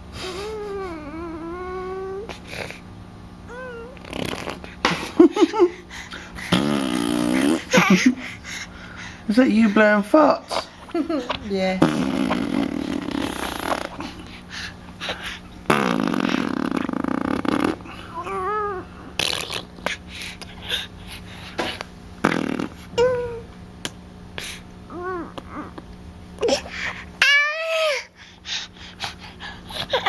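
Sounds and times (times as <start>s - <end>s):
baby blowing raspberries: 2.3s - 2.8s, 3.9s - 5.0s, 5.9s - 9.1s, 11.8s - 18.4s, 19.1s - 23.4s.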